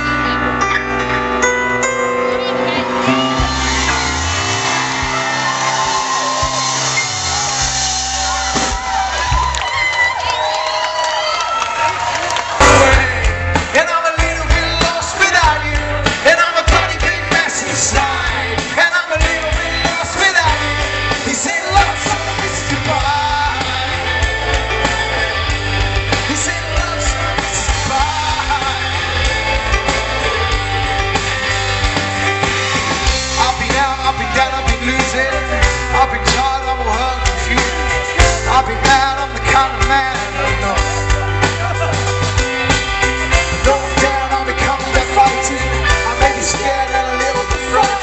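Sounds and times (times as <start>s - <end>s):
heavy bass line: 0.0s - 9.5s, 12.5s - 48.0s
live rock band playing: 0.0s - 48.0s
lead singer singing: 12.6s - 48.0s.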